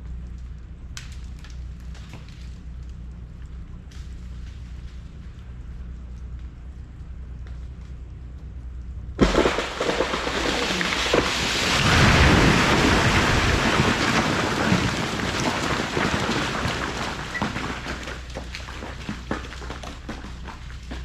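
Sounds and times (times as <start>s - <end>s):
branches snapping and ice shattering: 9.2s - 17.4s
tree limb crashing onto shed: 9.2s - 20.6s
falling ice pieces tapping: 9.2s - 21.0s.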